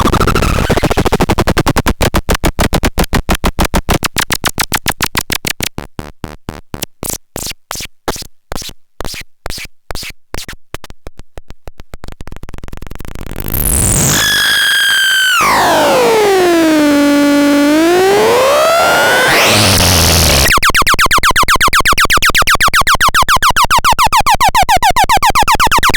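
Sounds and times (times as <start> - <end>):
harsh synthesizer buzz: 13.5 - 21.4.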